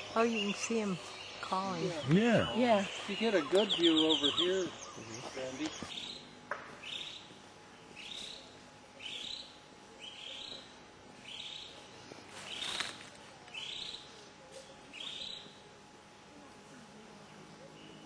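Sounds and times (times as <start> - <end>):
songbird calling: 0.0 - 11.8, 12.4 - 14.3, 14.9 - 15.6.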